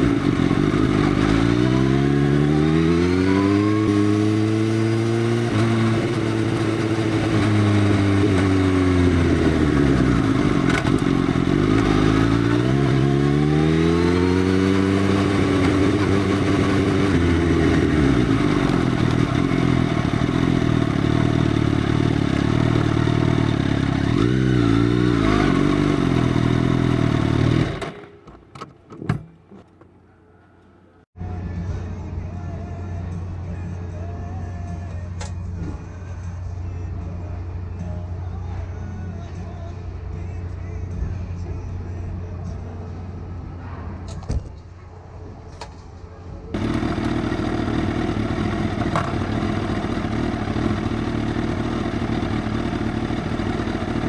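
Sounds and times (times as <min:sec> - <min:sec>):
motorcycle engine revving and idling: 0:00.0 - 0:31.0, 0:46.5 - 0:54.0.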